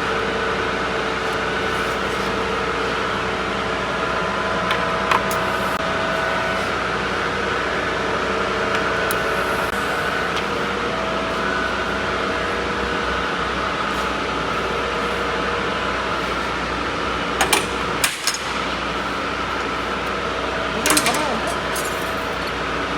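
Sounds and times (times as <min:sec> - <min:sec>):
welding equipment hum and hiss: 0:00.0 - 0:22.9.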